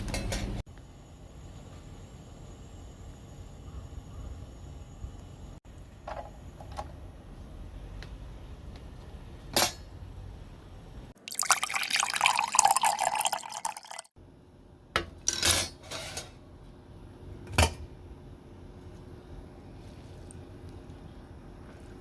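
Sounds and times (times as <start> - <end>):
liquid pouring into container: 11.2 - 14.1.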